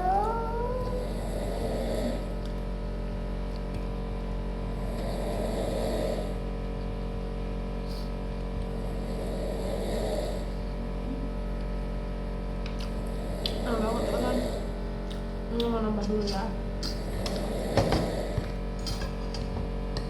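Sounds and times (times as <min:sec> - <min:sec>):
person snoring: 0:00.0 - 0:02.3, 0:04.8 - 0:06.4, 0:08.9 - 0:10.6, 0:17.0 - 0:18.4
steady low hum: 0:00.0 - 0:20.0.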